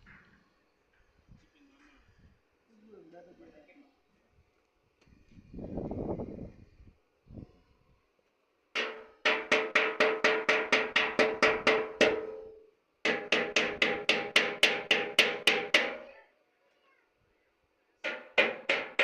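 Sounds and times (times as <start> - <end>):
hammer ringing on steel: 8.8 - 16.1.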